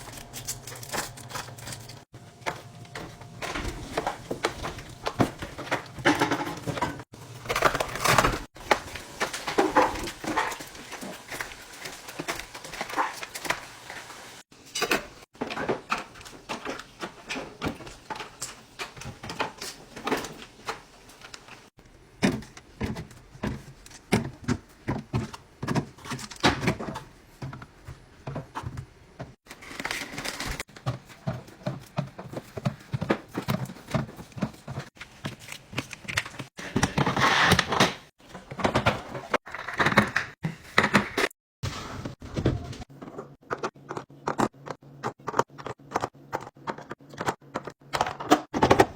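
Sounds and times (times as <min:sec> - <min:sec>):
fridge doors opening and closing: 0:00.0 - 0:10.6
food packages being handled: 0:00.0 - 0:41.0.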